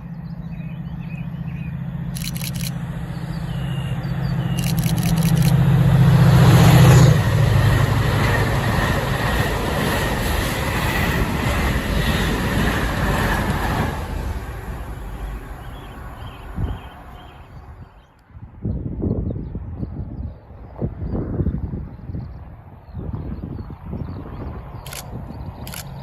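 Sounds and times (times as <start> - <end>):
train rumble: 0.0 - 18.1
diesel locomotive engine hum: 0.0 - 26.0.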